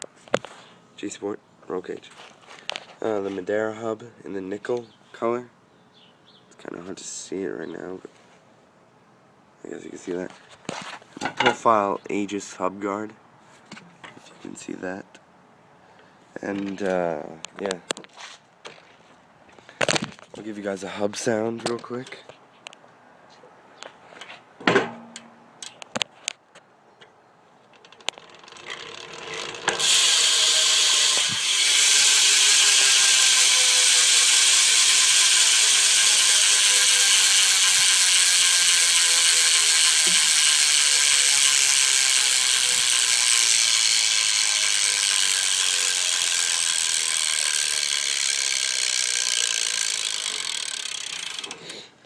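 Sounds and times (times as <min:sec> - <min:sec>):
bike hub ratcheting: 0:27.8 - 0:51.6.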